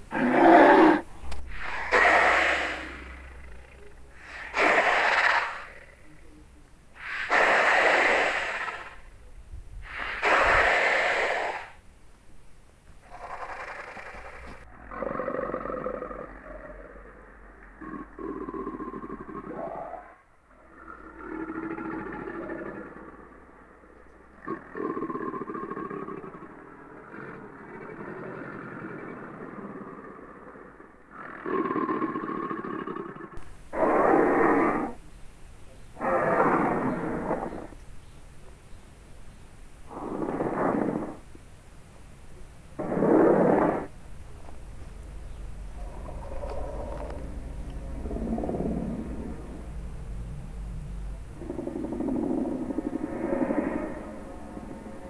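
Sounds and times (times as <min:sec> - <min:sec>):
faint pitched creature call: 0:00.0 - 0:09.1, 0:45.6 - 0:55.0
breathy hissing exhalations: 0:00.1 - 0:06.1, 0:07.0 - 0:09.1, 0:09.8 - 0:11.8.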